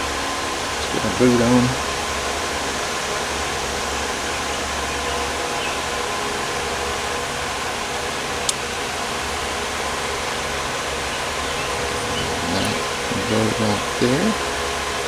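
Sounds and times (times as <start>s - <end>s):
faint hum: 11.0s - 14.9s.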